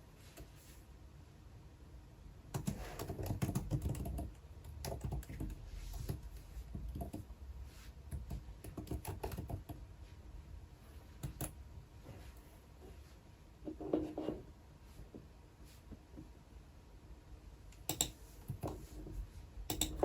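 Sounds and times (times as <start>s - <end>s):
computer keyboard typing: 2.5s - 7.3s, 8.1s - 9.8s, 17.9s - 18.8s, 19.7s - 20.0s.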